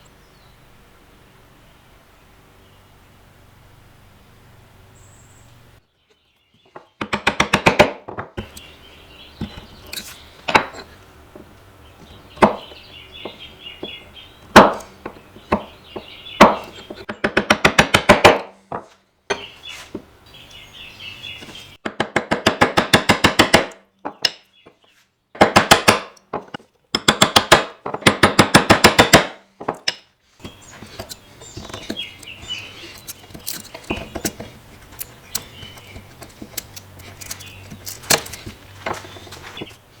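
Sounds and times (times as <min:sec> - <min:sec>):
rapid tapping on wood: 0:06.7 - 0:19.5, 0:21.8 - 0:24.8, 0:25.4 - 0:39.8
hard knocks on wood: 0:06.8 - 0:08.5, 0:12.4 - 0:19.5, 0:25.4 - 0:29.8.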